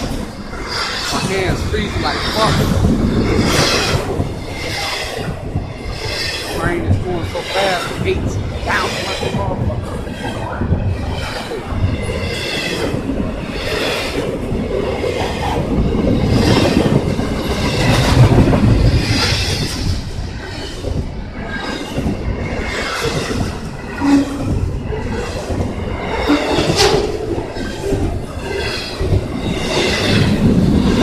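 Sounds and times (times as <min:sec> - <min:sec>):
train wheels clacking over rail joints: 0:00.0 - 0:31.0.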